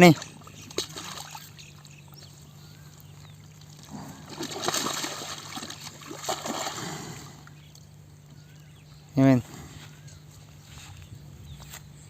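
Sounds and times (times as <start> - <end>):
water splashing and sloshing: 0.0 - 8.1.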